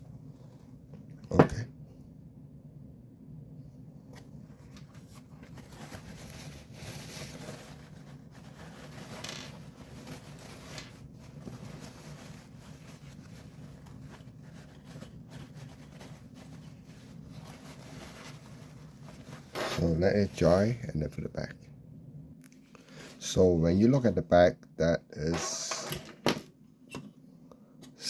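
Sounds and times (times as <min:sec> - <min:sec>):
rustling and scraping on a bench: 0:04.1 - 0:20.1.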